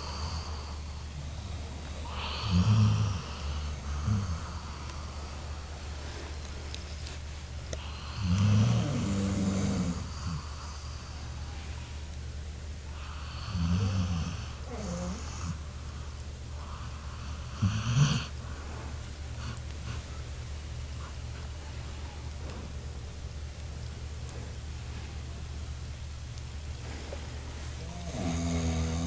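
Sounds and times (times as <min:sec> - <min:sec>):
steady low hum: 0:00.0 - 0:29.0
dog snoring: 0:02.0 - 0:05.3, 0:07.8 - 0:11.0, 0:12.9 - 0:15.6, 0:16.6 - 0:18.4, 0:27.8 - 0:29.0.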